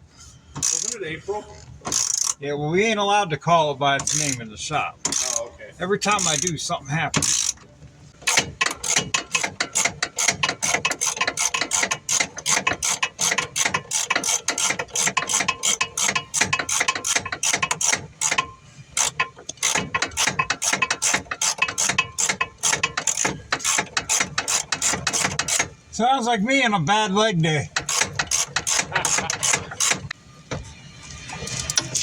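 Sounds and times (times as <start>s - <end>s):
ratchet wrench clicking: 0.6s - 1.0s, 1.9s - 2.4s, 4.0s - 4.4s, 5.1s - 5.5s, 6.2s - 6.6s, 7.2s - 7.6s, 8.3s - 25.7s, 27.8s - 30.2s.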